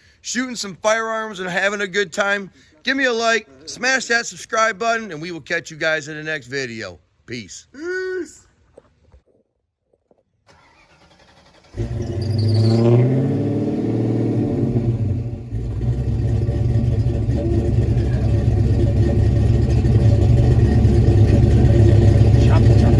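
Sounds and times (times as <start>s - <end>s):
car engine starting and rumbling: 10.5s - 22.9s.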